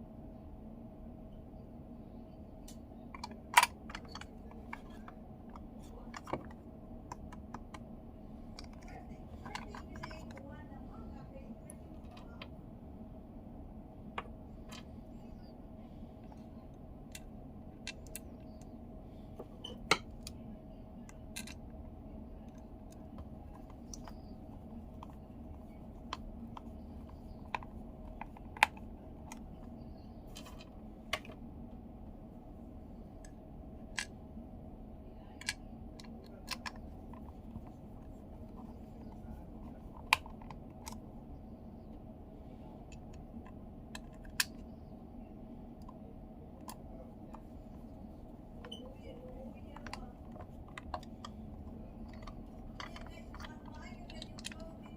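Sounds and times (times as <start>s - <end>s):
steady low hum: 0.0s - 54.9s.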